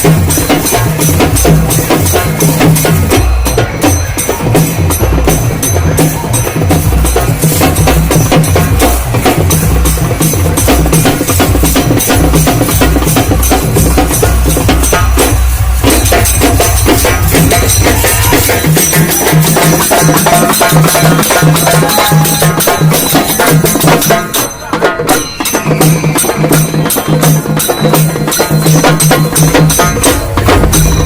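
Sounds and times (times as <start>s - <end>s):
low repeating beat: 0.0s - 20.7s, 29.3s - 31.0s
frame drums beaten with sticks: 0.0s - 31.0s.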